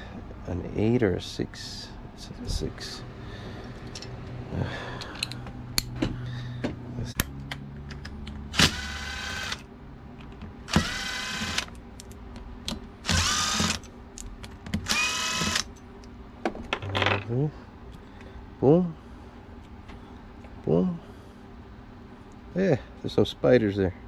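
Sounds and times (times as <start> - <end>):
power driver whirring: 8.4 - 9.7, 10.7 - 11.8, 13.0 - 13.9, 14.8 - 15.7.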